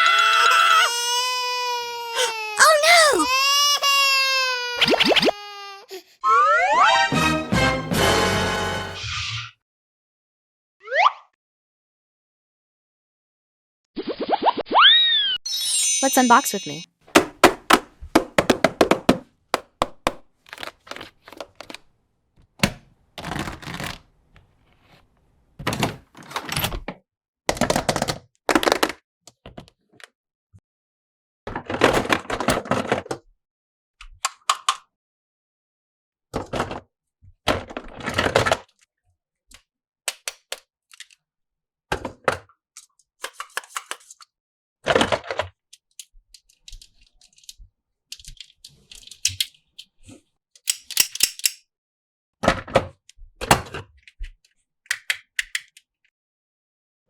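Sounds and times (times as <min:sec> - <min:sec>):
plastic toy parts clicking: 0:46.0 - 0:49.9, 0:50.6 - 0:51.6, 0:54.9 - 0:55.8.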